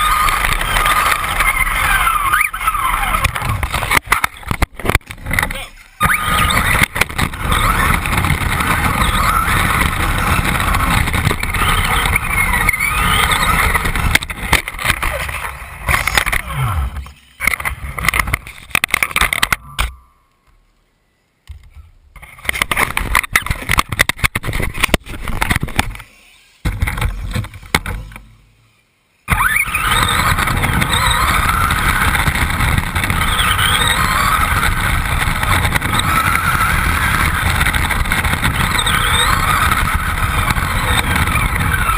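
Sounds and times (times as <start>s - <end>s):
rattling rumble of toy car wheels: 0.0s - 19.6s, 29.3s - 41.9s.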